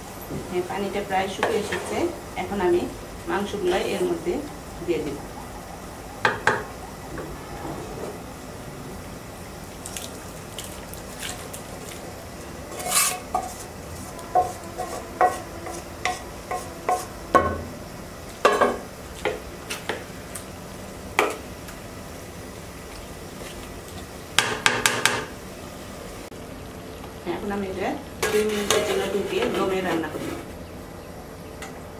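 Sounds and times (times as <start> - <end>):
spoon scraping cooking pot: 1.3 - 2.1, 12.7 - 17.2, 28.2 - 30.5.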